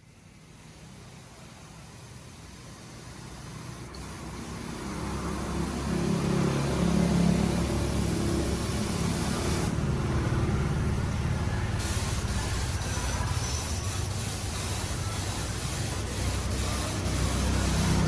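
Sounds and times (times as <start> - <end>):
motorcycle engine running: 3.9 - 18.0.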